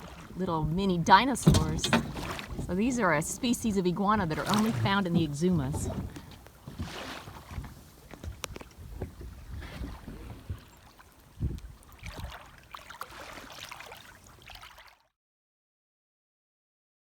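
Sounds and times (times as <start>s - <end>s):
water washing and lapping: 0.0s - 15.1s
wind buffeting microphone: 0.1s - 10.7s, 11.3s - 12.4s.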